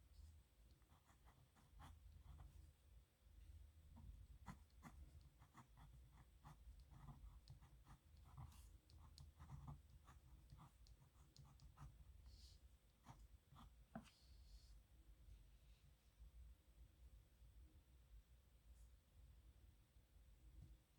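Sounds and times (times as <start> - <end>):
pen scratching on paper: 0.8 - 2.6, 4.0 - 12.0.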